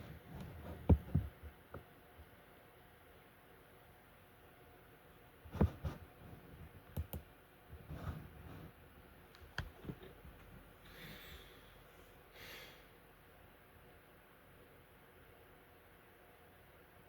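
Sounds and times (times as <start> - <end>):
soft handling clicks and knocks: 0.4 - 1.9.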